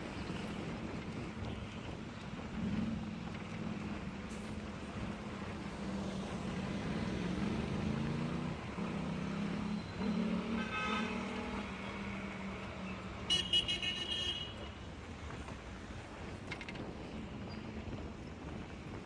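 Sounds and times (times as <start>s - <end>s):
vehicle engines running: 0.0s - 19.0s
car horn honking: 10.5s - 11.7s, 13.3s - 14.7s.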